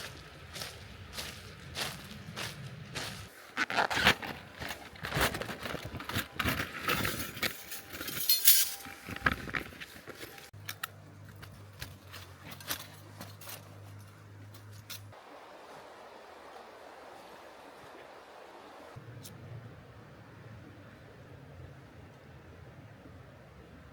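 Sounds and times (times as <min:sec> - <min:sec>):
small objects clinking and rattling: 0:06.0 - 0:09.6.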